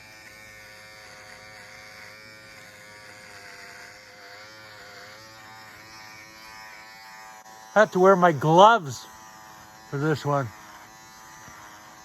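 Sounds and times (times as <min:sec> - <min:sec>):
electric shaver buzzing: 0:00.0 - 0:12.0.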